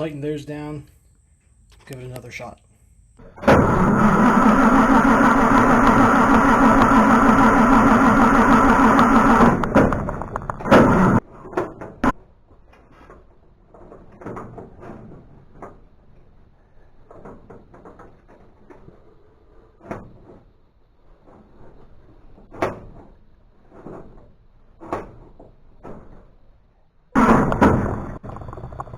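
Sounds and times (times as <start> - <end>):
knocks and clunks of work: 3.2 - 12.2, 27.2 - 28.9.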